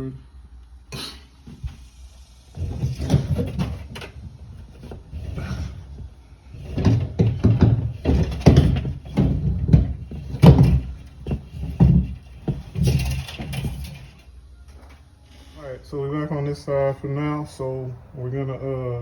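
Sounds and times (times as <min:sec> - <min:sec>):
cable knocking and rubbing in wall: 0:02.5 - 0:14.3.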